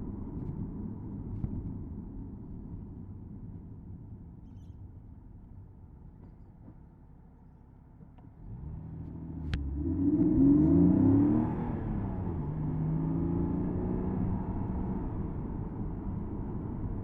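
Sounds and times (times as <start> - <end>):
car engine accelerating: 8.4 - 17.0.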